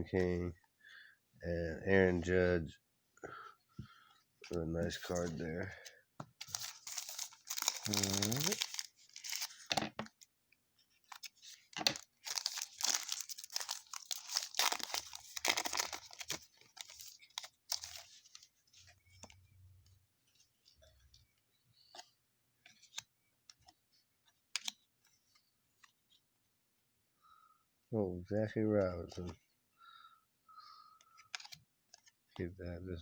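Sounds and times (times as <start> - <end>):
cards being handled: 4.4 - 26.3, 31.0 - 32.4
wrapper tearing and crinkling: 6.4 - 9.7, 11.1 - 18.2.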